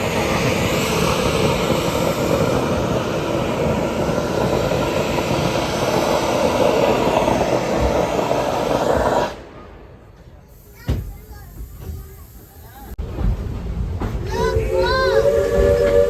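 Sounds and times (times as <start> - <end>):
steam blasting from valve: 0.0 - 9.5, 14.6 - 16.0.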